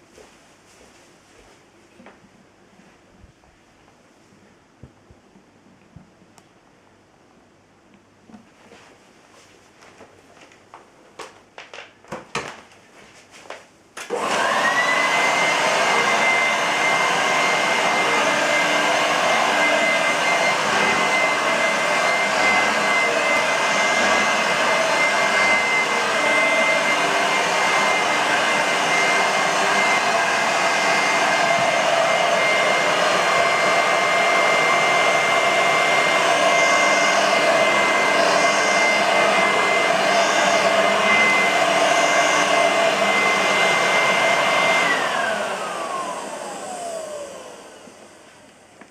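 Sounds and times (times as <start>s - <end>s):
vacuum cleaner motor whining: 14.0s - 48.9s.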